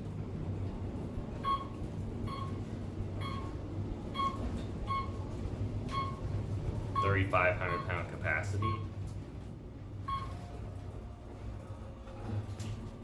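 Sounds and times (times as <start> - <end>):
elevator hum: 0.0 - 13.0
short electronic beeps: 3.2 - 3.5, 7.0 - 8.9, 10.0 - 10.5.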